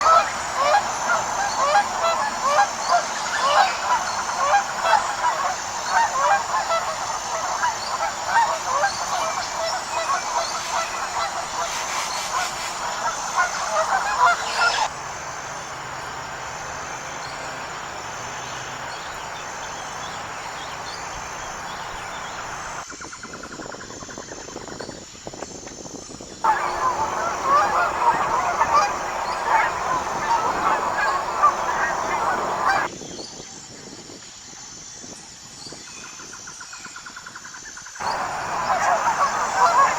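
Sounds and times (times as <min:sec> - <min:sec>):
geese honking: 0:00.0 - 0:14.9, 0:26.5 - 0:32.9, 0:38.0 - 0:39.9
steady hiss: 0:00.0 - 0:22.8, 0:26.5 - 0:32.9, 0:38.0 - 0:39.9.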